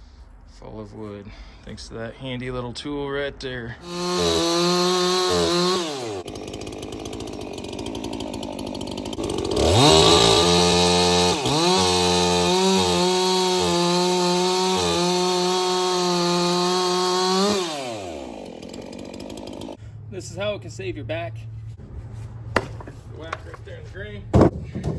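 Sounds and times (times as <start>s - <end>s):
chainsaw engine revving: 3.8s - 19.8s.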